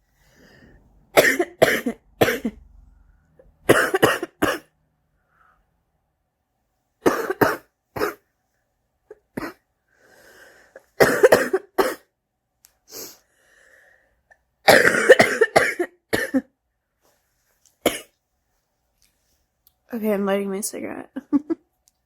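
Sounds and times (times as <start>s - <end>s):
person coughing: 1.2s - 2.6s, 3.7s - 4.7s, 7.0s - 8.2s, 9.1s - 9.6s, 11.0s - 12.1s, 14.7s - 16.5s, 17.8s - 18.1s.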